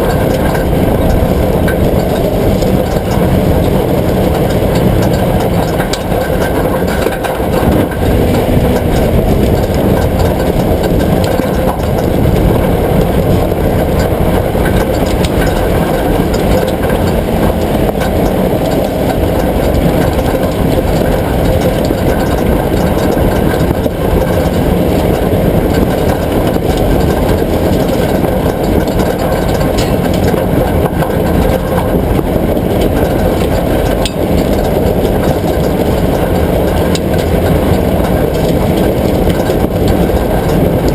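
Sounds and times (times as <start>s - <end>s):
vehicle engine running: 0.0s - 40.9s.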